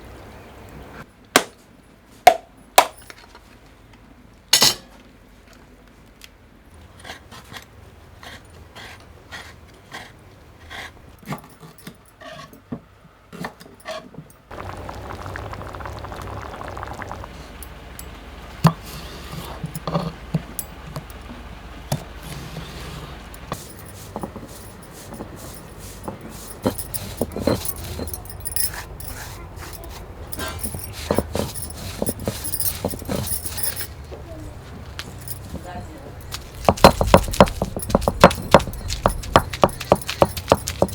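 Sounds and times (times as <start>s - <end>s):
low hum: 14.5s - 18.3s
cooking utensils clinking: 23.4s - 34.0s
sharp knocks: 36.4s - 40.9s.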